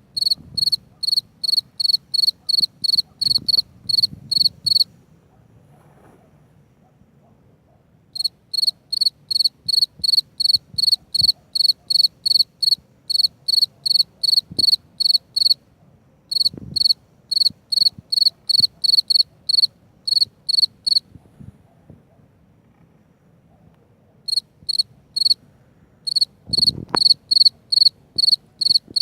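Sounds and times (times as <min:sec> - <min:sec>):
cricket chirping: 0:00.1 - 0:04.9, 0:08.2 - 0:15.6, 0:16.3 - 0:21.1, 0:24.3 - 0:25.4, 0:26.1 - 0:29.0.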